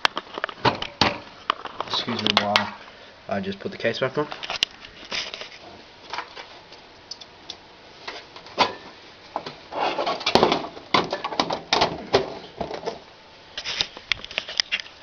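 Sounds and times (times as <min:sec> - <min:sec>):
clicks and scrapes: 0:04.3 - 0:06.6, 0:09.4 - 0:11.5, 0:13.6 - 0:15.0.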